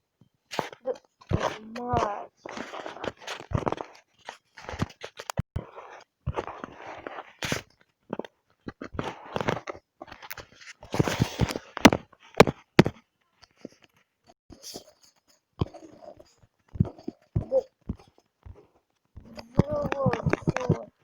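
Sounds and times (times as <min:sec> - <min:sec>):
drawing on paper: 0:00.6 - 0:07.4.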